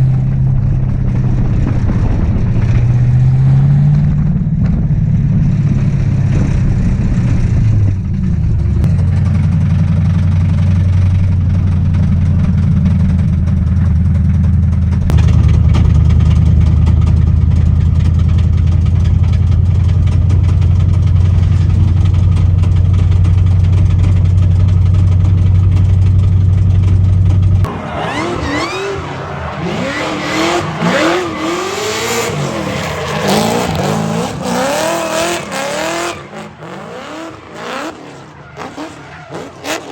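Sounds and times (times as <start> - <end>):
car engine under load: 0.0 - 39.9
engine revving: 15.1 - 39.9
tire squeal: 15.1 - 39.9.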